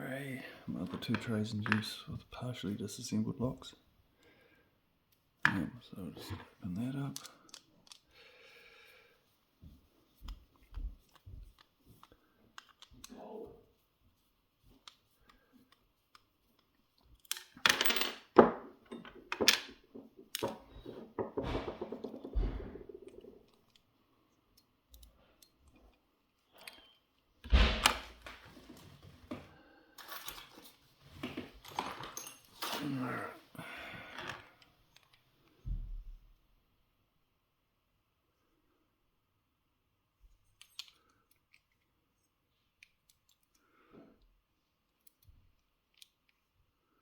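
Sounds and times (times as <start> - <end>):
small metal parts clicking and clattering: 11.0 - 13.2, 15.6 - 20.7, 30.0 - 30.8, 40.4 - 43.6
knocking: 20.8 - 23.1.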